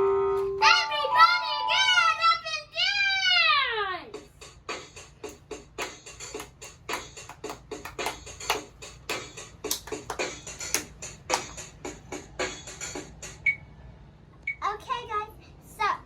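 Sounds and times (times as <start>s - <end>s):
toy keyboard drum rhythm: 4.2s - 13.2s.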